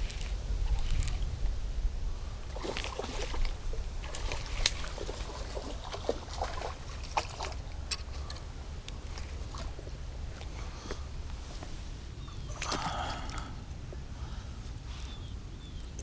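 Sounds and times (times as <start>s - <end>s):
small clicks and handling noise: 0.0s - 1.3s, 4.4s - 5.0s, 7.4s - 9.7s
steady low rumble: 0.0s - 16.0s
pond water sloshing: 2.4s - 11.2s, 12.0s - 14.2s.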